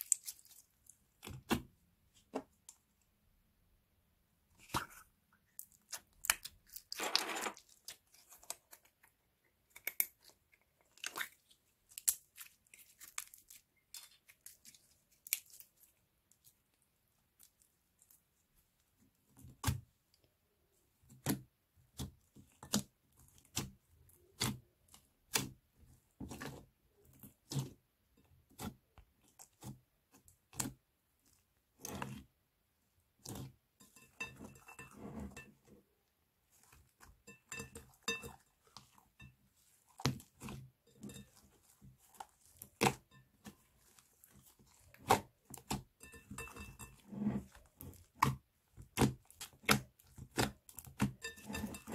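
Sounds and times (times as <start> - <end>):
slime crackling and crinkling: 0.0 - 1.5, 4.6 - 9.0, 9.9 - 18.2, 38.0 - 51.9.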